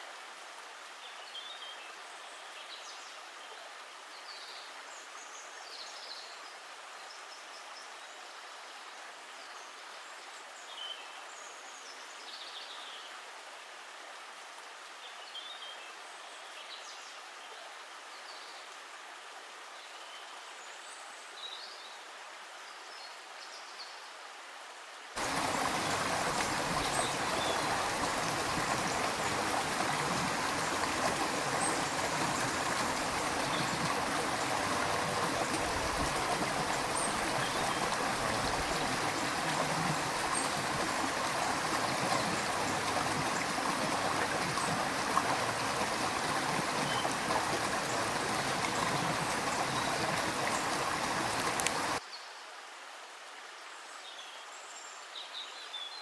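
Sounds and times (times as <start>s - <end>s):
running water rushing: 25.2s - 52.0s.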